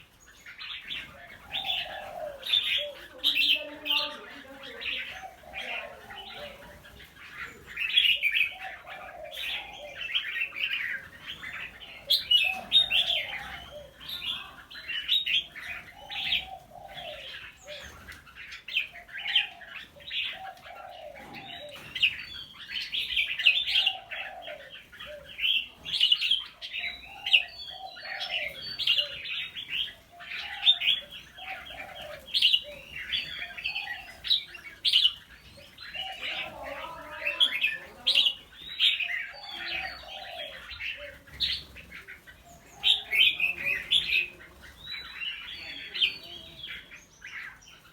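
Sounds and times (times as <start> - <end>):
birds chirping: 0.0 - 47.9
low cooing call: 1.2 - 10.9, 11.6 - 14.8, 15.7 - 18.1, 19.2 - 22.3, 35.6 - 44.7.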